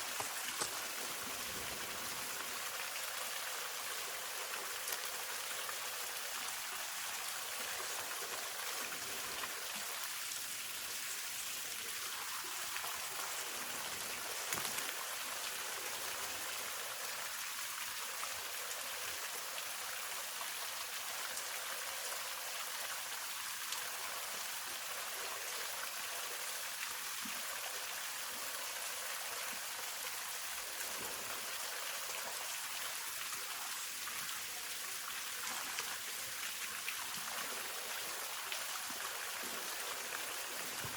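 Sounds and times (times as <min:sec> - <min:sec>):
waterfall hiss: 0:00.0 - 0:40.9.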